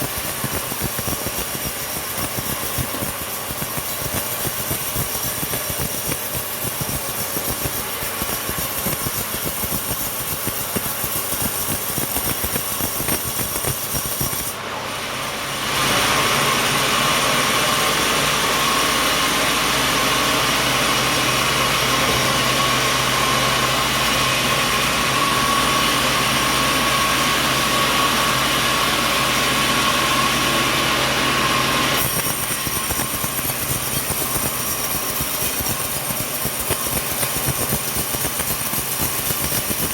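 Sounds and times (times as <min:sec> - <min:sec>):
machine whine: 0:00.0 - 0:39.9
sawmill machinery running: 0:00.0 - 0:39.9.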